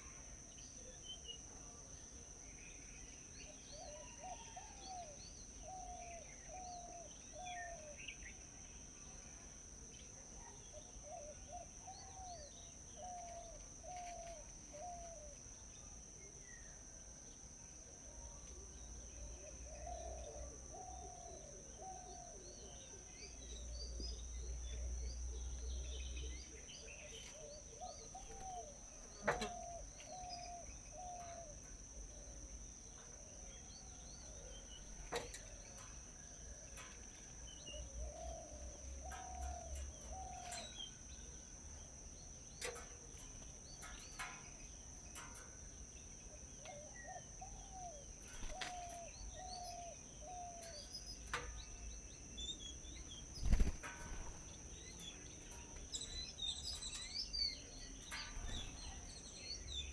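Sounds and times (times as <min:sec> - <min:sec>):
birds chirping: 0:19.6 - 0:59.9.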